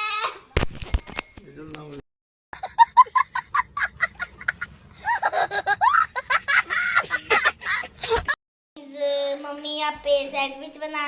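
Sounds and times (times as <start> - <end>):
young child laughing: 3.8 - 8.4.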